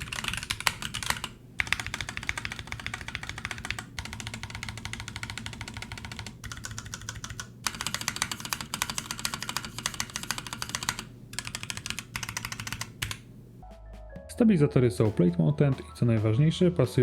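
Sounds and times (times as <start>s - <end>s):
mechanical keyboard typing: 0.0s - 13.2s.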